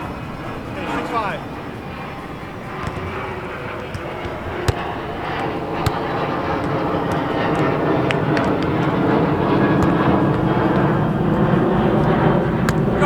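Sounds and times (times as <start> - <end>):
airplane passing overhead: 0.0 - 13.0
volleyball being hit: 2.7 - 13.0.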